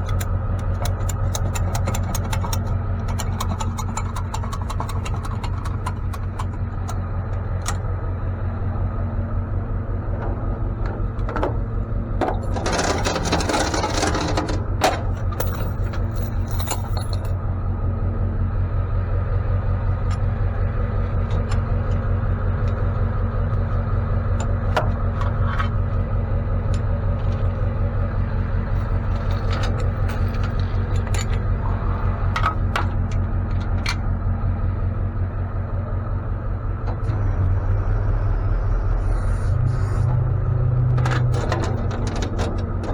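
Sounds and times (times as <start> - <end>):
truck engine idling: 0.0 - 42.9
light metallic clinks and scrapes: 12.4 - 17.4, 28.8 - 31.5.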